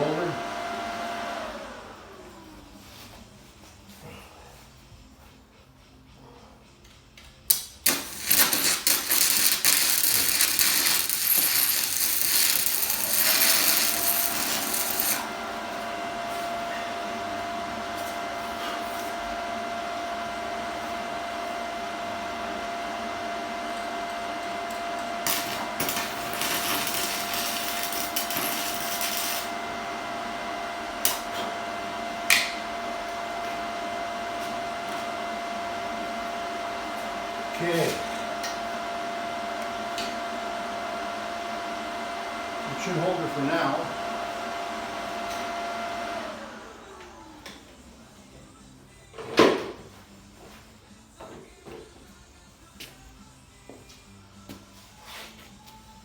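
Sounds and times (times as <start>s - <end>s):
welding arc crackling and hissing: 7.8s - 15.3s, 24.7s - 29.6s
machine hum with held tone: 8.2s - 48.8s.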